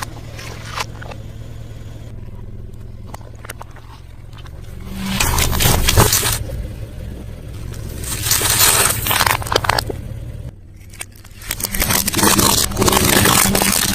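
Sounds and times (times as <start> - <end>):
chewing crispy food: 10.8 - 13.9.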